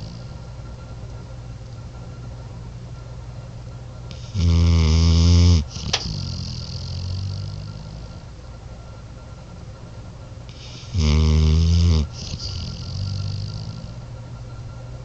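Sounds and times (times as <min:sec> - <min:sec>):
dog snoring: 0:00.0 - 0:00.5, 0:04.1 - 0:08.3, 0:10.5 - 0:14.1.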